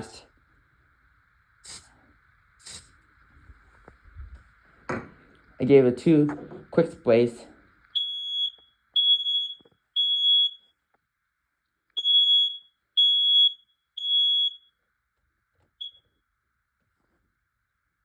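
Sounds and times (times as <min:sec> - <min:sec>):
smoke alarm beeping: 0:07.9 - 0:10.8, 0:12.0 - 0:14.8, 0:15.8 - 0:16.2
smoke alarm chirp: 0:07.9 - 0:10.8, 0:12.0 - 0:14.8, 0:15.8 - 0:16.2.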